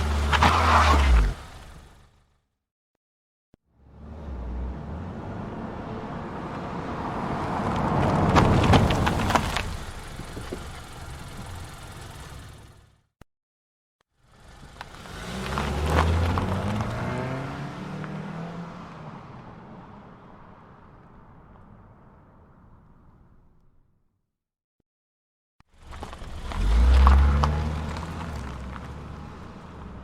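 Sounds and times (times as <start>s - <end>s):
car driving past: 15.0s - 21.1s, 25.9s - 30.0s.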